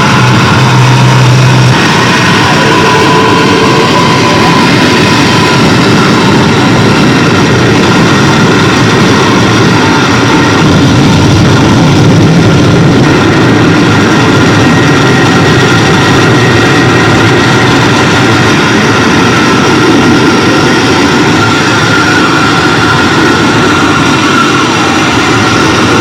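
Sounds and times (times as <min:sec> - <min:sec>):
distorted harsh noise: 0:00.0 - 0:26.0.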